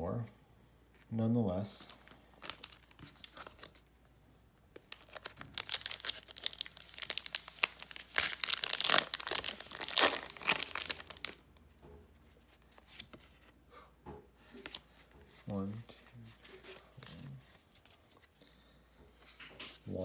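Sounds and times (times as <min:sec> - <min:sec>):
foil wrapper crinkling and tearing: 0:01.9 - 0:03.8, 0:04.8 - 0:11.4.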